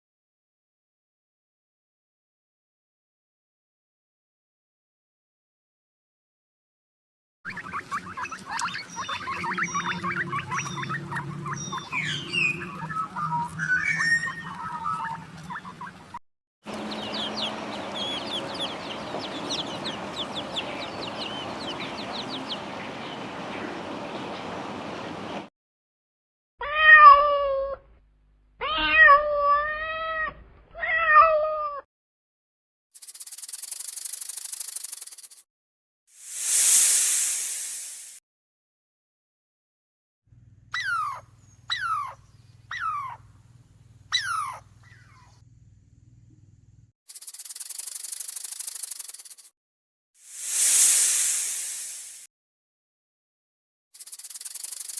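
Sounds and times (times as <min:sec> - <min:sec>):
small animals chirping: 0:07.5 - 0:16.2, 0:33.0 - 0:35.4, 0:40.8 - 0:43.3, 0:44.1 - 0:45.4, 0:47.1 - 0:49.5, 0:54.0 - 0:54.9
cat meowing: 0:26.6 - 0:27.8, 0:28.6 - 0:31.8.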